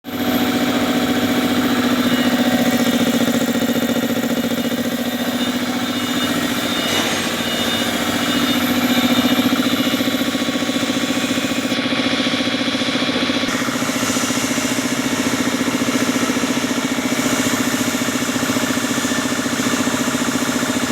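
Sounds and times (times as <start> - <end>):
air compressor pulsing hum: 0.1 - 20.9.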